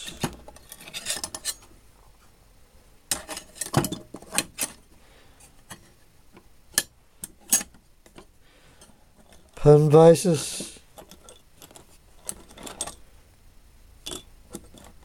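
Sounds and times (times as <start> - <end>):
steel tools clinking in drawer: 0.0 - 1.6, 10.6 - 13.0, 14.0 - 15.0.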